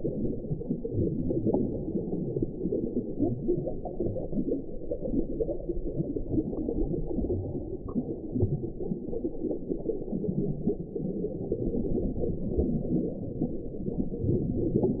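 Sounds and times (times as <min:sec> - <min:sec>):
muffled underwater water churning: 0:00.0 - 0:15.0.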